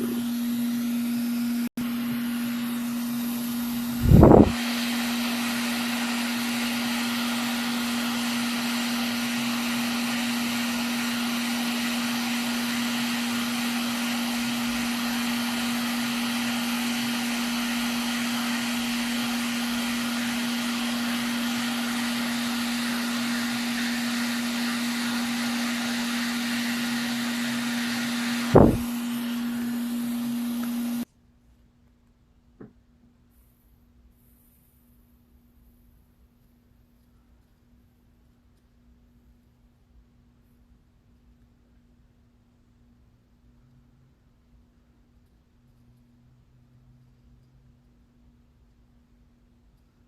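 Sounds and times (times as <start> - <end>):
electric air blower humming: 0.0 - 31.1
loud thump: 4.0 - 4.6, 28.5 - 29.0.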